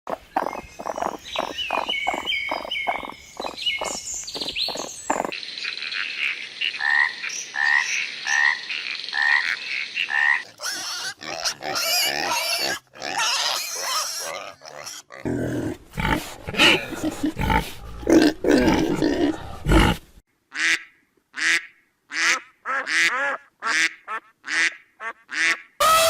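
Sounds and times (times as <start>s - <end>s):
rough animal calling: 0.1s - 5.4s, 9.2s - 20.0s
repeated animal call: 0.1s - 26.0s
fast pulsed animal calls: 0.3s - 5.4s.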